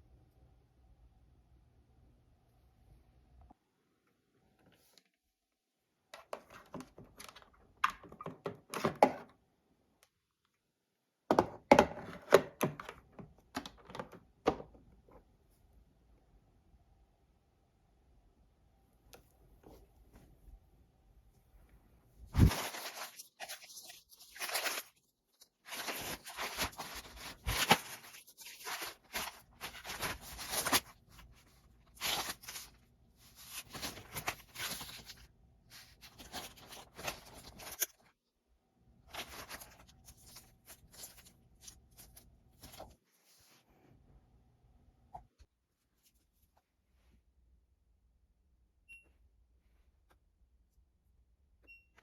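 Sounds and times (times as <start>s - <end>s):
crinkling and rustling handling noise: 6.0s - 9.3s, 21.2s - 38.2s, 39.0s - 43.8s.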